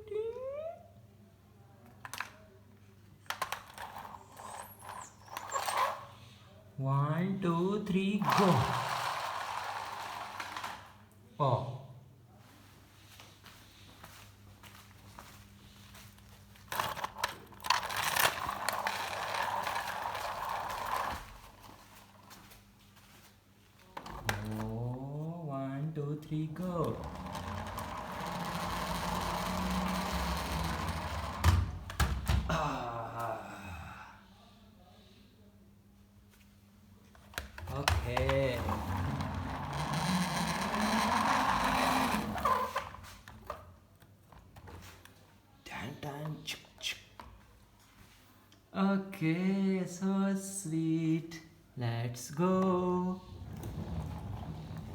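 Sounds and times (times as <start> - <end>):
toy wheels rolling on floor: 3.2 - 6.1, 8.2 - 11.0, 16.6 - 22.6, 26.6 - 32.0, 37.4 - 43.7, 53.2 - 54.9
small electric motors whirring: 8.2 - 10.9
toy rc car whirring rattle: 8.2 - 11.0, 16.8 - 21.2.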